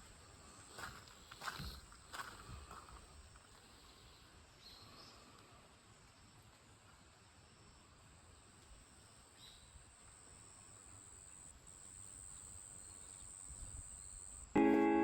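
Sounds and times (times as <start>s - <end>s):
night insects chirring: 7.4s - 14.6s
music: 14.6s - 15.0s.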